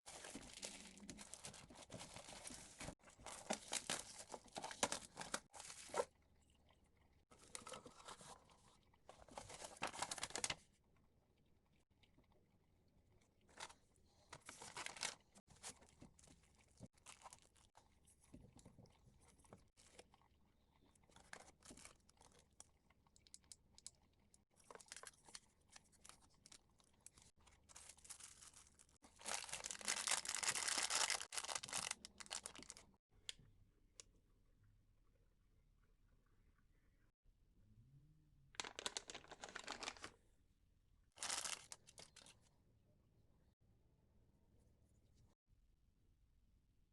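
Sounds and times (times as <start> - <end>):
crinkling and rustling handling noise: 0.0 - 6.2, 7.3 - 10.8, 13.4 - 20.2, 21.0 - 33.0, 38.6 - 40.2, 41.1 - 42.5.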